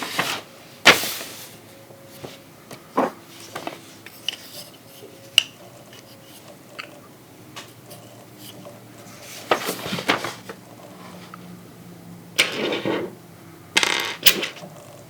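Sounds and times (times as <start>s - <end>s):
plastic scraping and rattling: 8.5s - 11.4s.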